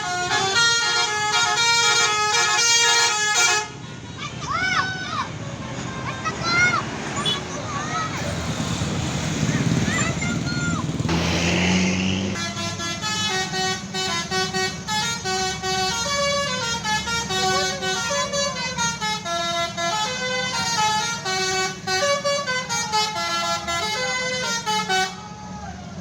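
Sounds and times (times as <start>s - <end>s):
air horns playing melody: 0.0s - 3.8s, 11.1s - 25.2s
bus engine running: 0.0s - 26.0s.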